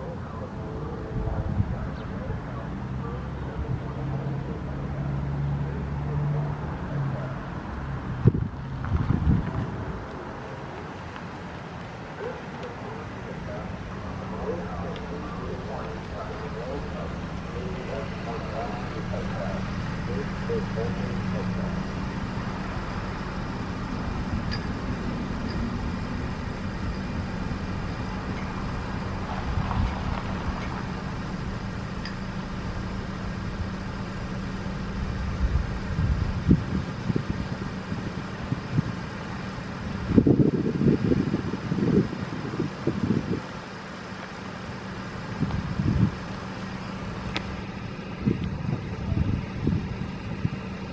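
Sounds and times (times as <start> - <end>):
wind buffeting microphone: 0.0 - 2.4, 8.0 - 11.0, 35.0 - 39.0, 39.9 - 43.6, 45.3 - 46.3, 47.1 - 50.7
road traffic rumble: 0.0 - 50.9
steady low hum: 0.0 - 50.9.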